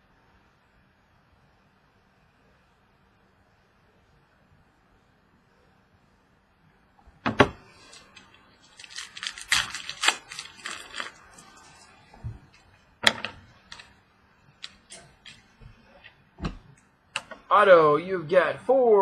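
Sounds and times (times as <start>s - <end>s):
card packaging crinkling: 7.6s - 14.0s, 14.6s - 15.5s.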